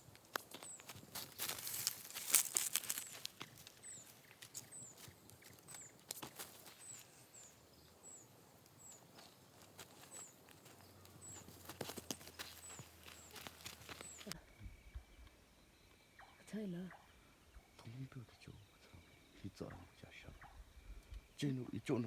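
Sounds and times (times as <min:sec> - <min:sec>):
footsteps on dry leaves: 0:00.0 - 0:07.6, 0:08.9 - 0:14.4.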